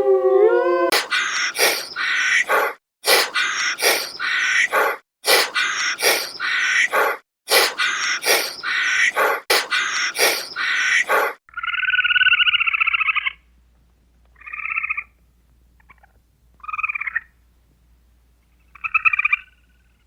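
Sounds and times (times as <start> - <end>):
harsh bird calls: 7.9 - 11.3.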